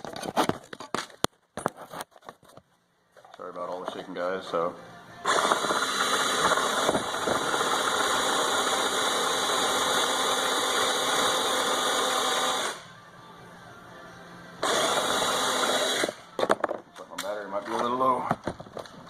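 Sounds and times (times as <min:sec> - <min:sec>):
cordless drill cutting plastic: 0:05.2 - 0:12.8, 0:14.6 - 0:16.2.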